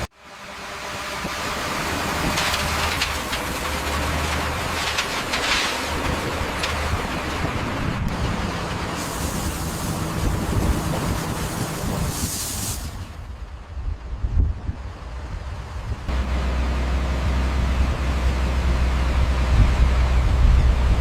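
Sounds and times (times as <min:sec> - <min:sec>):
construction machinery rumbling: 0:00.0 - 0:21.0
loud hiss: 0:08.2 - 0:13.3.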